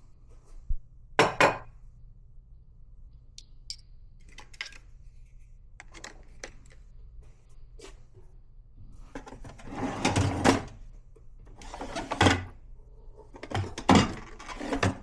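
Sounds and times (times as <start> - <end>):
dishes clinking and knocking: 1.2 - 1.7.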